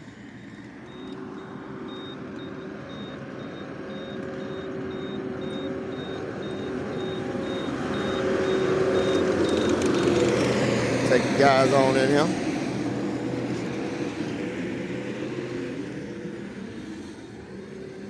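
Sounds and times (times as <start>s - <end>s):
skid steer engine running: 0.0s - 18.0s
high electronic warning beeps: 0.8s - 12.4s.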